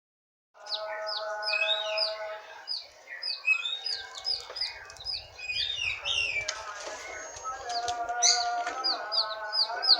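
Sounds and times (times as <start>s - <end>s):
parrot chirping: 1.1s - 6.3s.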